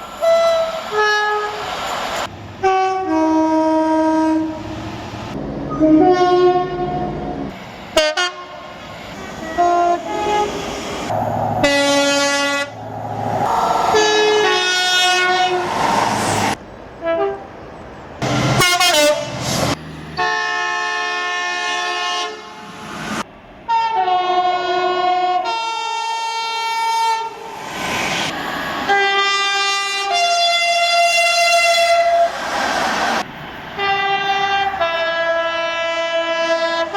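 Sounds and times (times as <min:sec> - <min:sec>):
train running noise: 0:00.0 - 0:23.7, 0:26.3 - 0:36.9
train horn blasts: 0:00.2 - 0:01.6, 0:02.6 - 0:04.7, 0:05.7 - 0:08.8, 0:09.4 - 0:10.6, 0:11.6 - 0:12.8, 0:13.9 - 0:15.7, 0:17.0 - 0:17.5, 0:18.2 - 0:22.8, 0:23.7 - 0:27.4, 0:28.9 - 0:32.4, 0:33.8 - 0:36.9.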